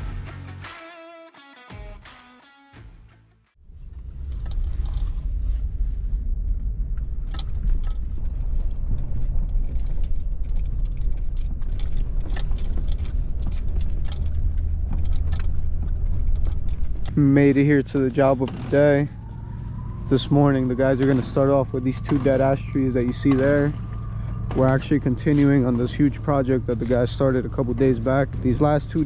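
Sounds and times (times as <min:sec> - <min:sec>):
vehicle engine and road rumble: 0:03.6 - 0:29.0
small rattles and clicks: 0:07.3 - 0:17.2.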